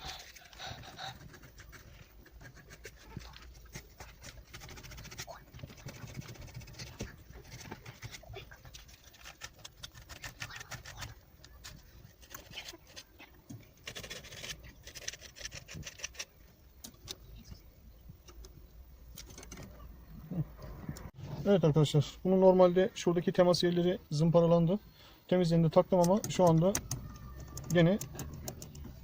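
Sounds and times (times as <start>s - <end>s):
rubbing strokes: 0.0s - 13.2s
small clicks and scrapes: 0.0s - 17.5s, 18.2s - 19.9s.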